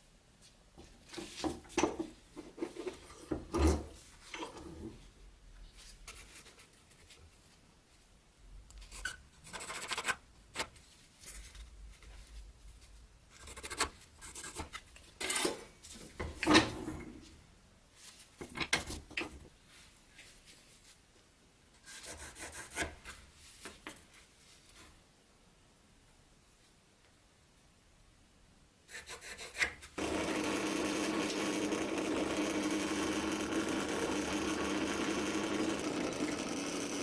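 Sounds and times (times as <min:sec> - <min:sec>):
filing or sanding strokes: 0:21.8 - 0:22.9, 0:28.9 - 0:29.8.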